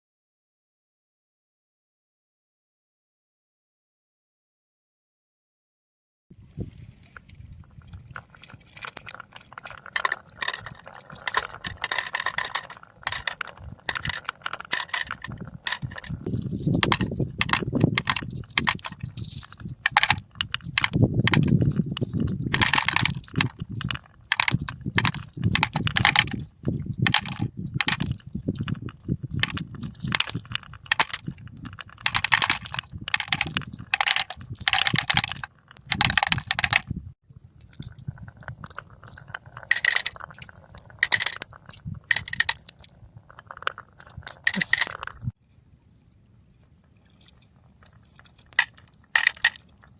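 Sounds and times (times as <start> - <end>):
marbles clattering down tracks: 8.1 - 36.9, 37.6 - 45.3, 47.2 - 49.9.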